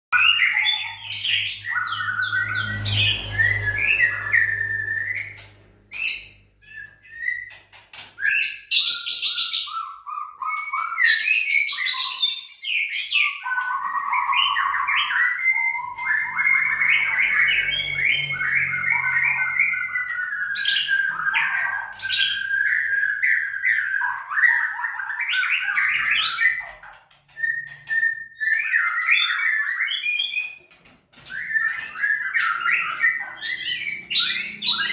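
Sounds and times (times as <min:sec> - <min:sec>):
bird singing whistled phrases: 0:08.2 - 0:26.7, 0:27.3 - 0:30.6.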